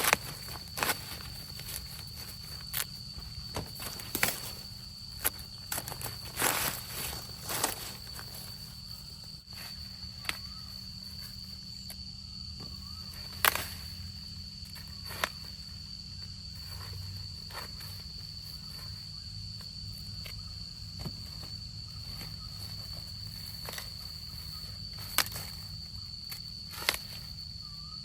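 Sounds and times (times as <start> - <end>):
leaves rustling: 0.0 - 11.9, 12.6 - 28.0
corn ears snapping: 0.0 - 12.0, 12.6 - 14.1, 14.7 - 15.6, 22.0 - 27.7
footsteps in cornfield: 0.0 - 12.0, 12.6 - 28.0.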